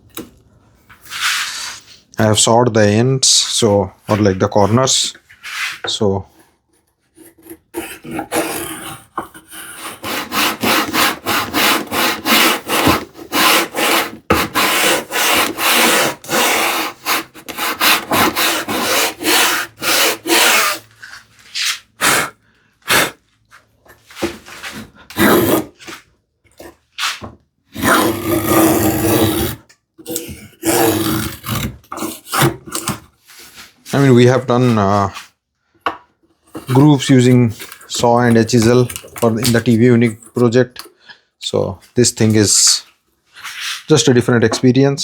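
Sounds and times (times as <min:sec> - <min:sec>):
saw and chisel on wood: 0:05.7 - 0:20.9, 0:24.2 - 0:26.0, 0:26.6 - 0:35.0, 0:36.4 - 0:40.6.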